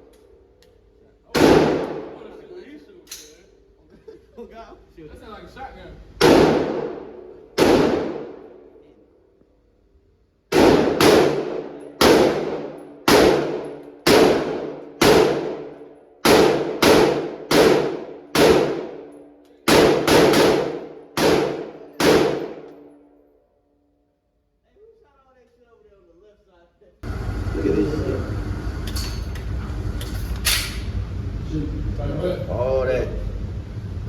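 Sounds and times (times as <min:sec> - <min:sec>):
gunshots with ringing echo: 0:01.3 - 0:02.3, 0:06.2 - 0:08.7, 0:10.5 - 0:23.0.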